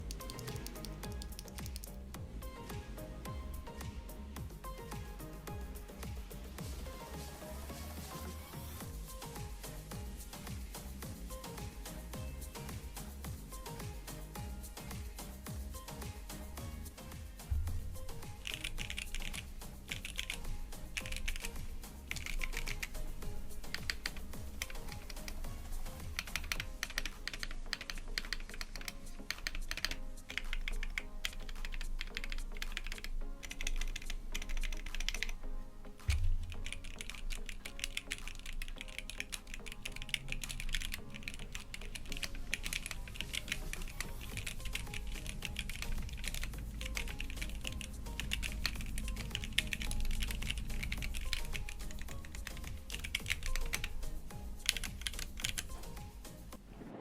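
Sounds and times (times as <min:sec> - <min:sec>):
mechanical keyboard typing: 0:00.0 - 0:02.0, 0:18.2 - 0:35.4, 0:36.5 - 0:54.0, 0:54.6 - 0:56.0
background music with bass: 0:00.0 - 0:56.6.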